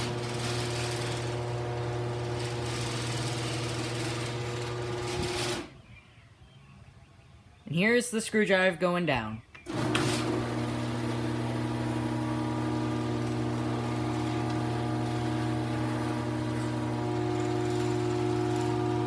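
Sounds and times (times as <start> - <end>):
garage door opener motor hum: 0.0 - 5.8, 9.6 - 19.0.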